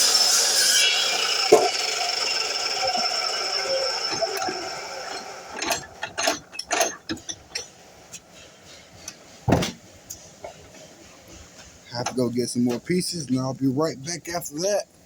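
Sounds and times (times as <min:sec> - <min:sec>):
saw motor winding down: 0:00.0 - 0:06.5
sharp clacks and knocks: 0:05.5 - 0:12.9.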